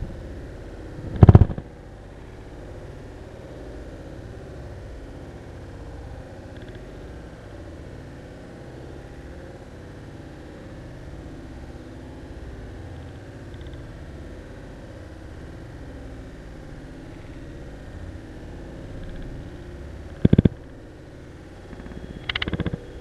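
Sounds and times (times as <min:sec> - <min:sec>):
steady low rumbling: 0:00.0 - 0:07.6, 0:14.2 - 0:23.0.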